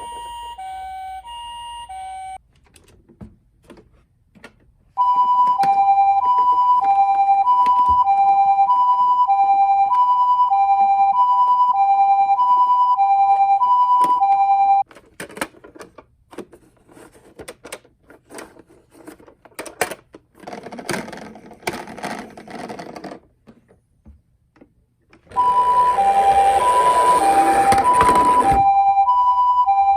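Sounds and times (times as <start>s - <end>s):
two-tone ambulance siren: 0.0s - 2.4s, 5.0s - 14.8s, 25.3s - 29.9s
plastic toy cars clicking and rattling: 14.8s - 23.6s.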